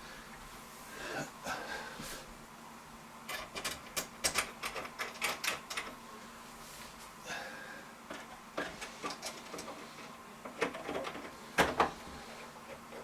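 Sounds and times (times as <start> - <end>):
sharp metal clicks and rattles: 3.3 - 5.9
hardware handling noise: 8.1 - 13.0.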